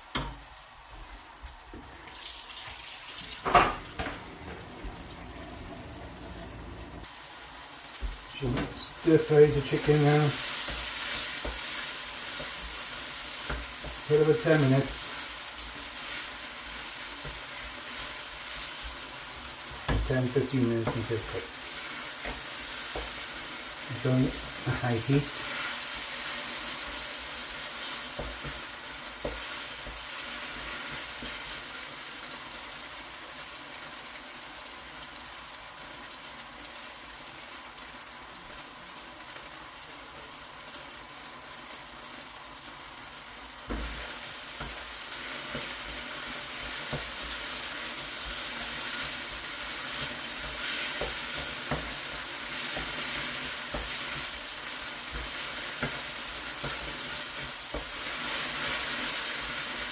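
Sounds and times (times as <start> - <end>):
meat sizzling in oil: 0.0 - 59.9
utensil tapping and scraping wok: 8.0 - 31.7, 43.7 - 59.9.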